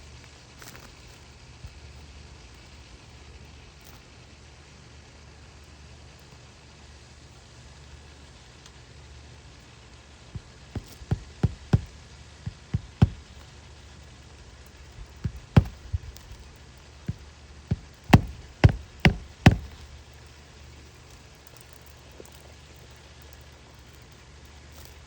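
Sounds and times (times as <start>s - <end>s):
sharp knocks: 10.4s - 13.4s, 15.0s - 16.5s, 17.1s - 20.0s.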